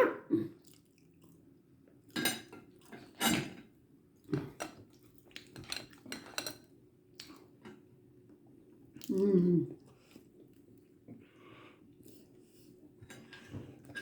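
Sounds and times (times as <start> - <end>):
cutlery and dishes clinking: 2.1 - 3.6, 5.4 - 6.7, 13.1 - 14.0.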